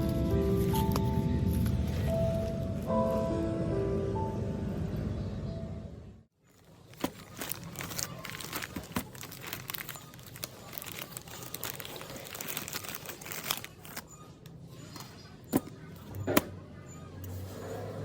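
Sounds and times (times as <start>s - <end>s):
small clicks and crinkling: 6.5s - 15.2s.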